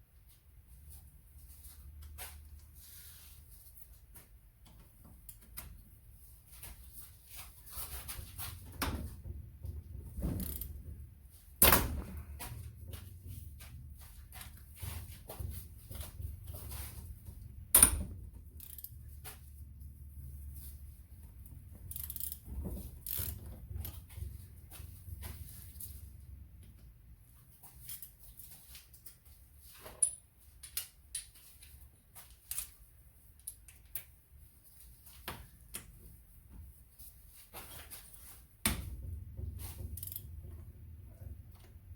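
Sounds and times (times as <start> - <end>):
small tool clicks and clinks: 18.6 - 19.0, 21.9 - 22.4.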